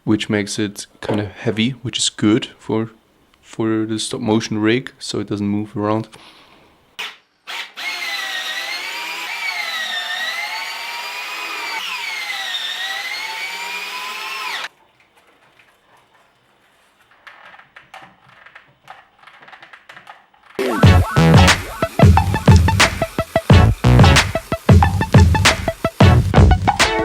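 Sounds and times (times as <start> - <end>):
power drill whining: 7.5 - 14.7, 20.6 - 26.2
faint clicks and handling: 14.7 - 20.6.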